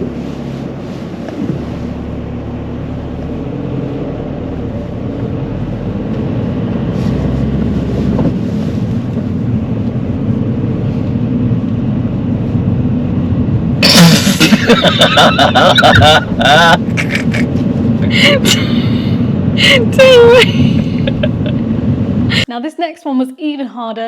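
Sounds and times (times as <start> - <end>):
car engine accelerating: 0.0 - 22.5
road noise inside car: 0.0 - 22.5.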